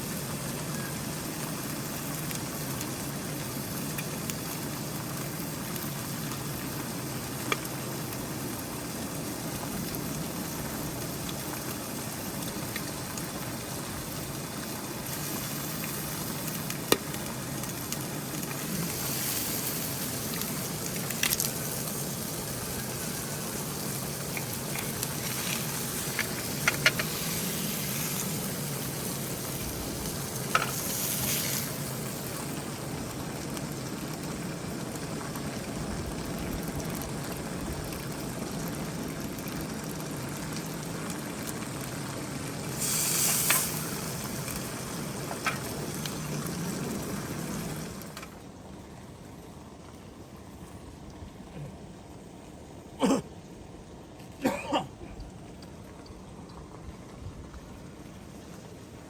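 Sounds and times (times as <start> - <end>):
patties sizzling in a frying pan: 0.0 - 48.2.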